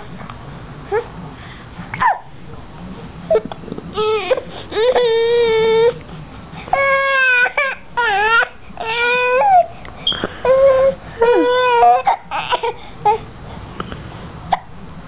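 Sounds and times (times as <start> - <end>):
baby crying: 10.4 - 13.2.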